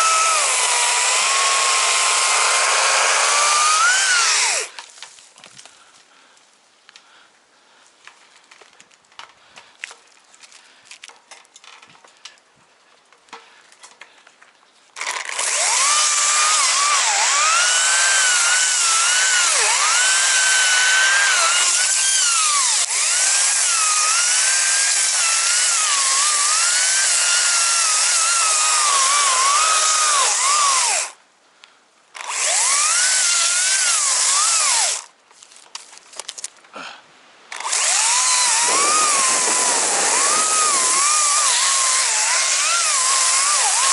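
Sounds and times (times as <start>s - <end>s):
chainsaw cutting thick wood: 0.0s - 4.8s, 15.0s - 31.2s, 32.2s - 35.1s, 37.5s - 43.9s.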